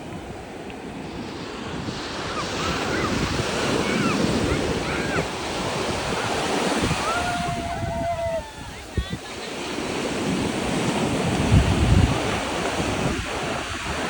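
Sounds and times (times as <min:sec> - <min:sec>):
ocean surf breaking: 0:00.0 - 0:14.0
wind buffeting microphone: 0:00.0 - 0:14.0.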